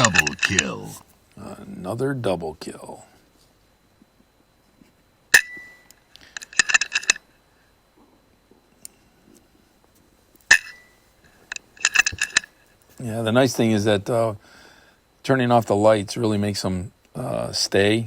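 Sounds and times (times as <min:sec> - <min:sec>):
metallic clinks: 0:00.0 - 0:00.8, 0:05.4 - 0:07.2, 0:10.5 - 0:12.6.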